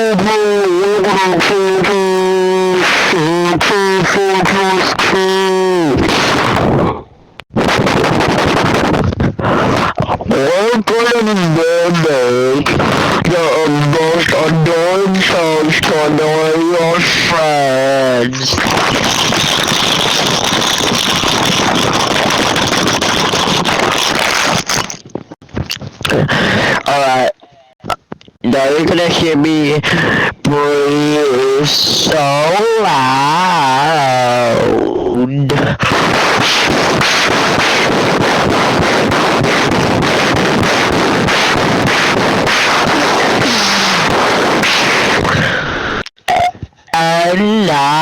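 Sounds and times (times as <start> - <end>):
harsh rattling crackle: 7.4 - 10.4, 18.4 - 26.1, 35.8 - 45.4
heavy breathing into microphone: 26.2 - 27.7.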